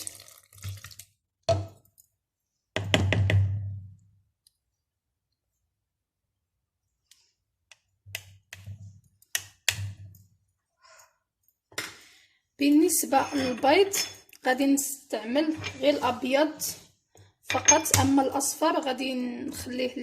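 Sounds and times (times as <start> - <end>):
kitchen utensils knocking on bowl: 17.5 - 18.2.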